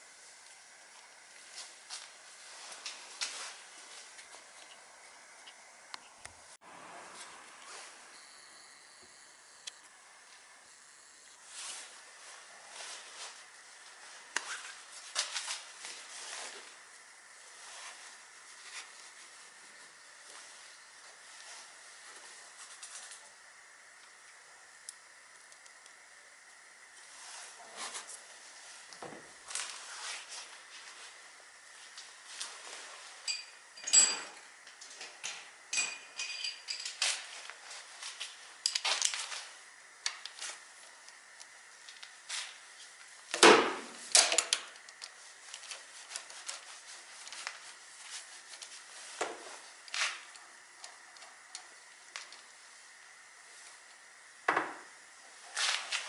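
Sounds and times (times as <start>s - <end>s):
metal tools clinking and knocking: 33.2s - 37.5s.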